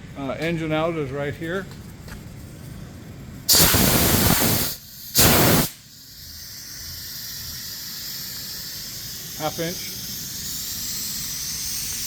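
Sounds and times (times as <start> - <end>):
faint steady hiss: 3.5 - 12.0
steam bursts hissing: 3.5 - 12.0.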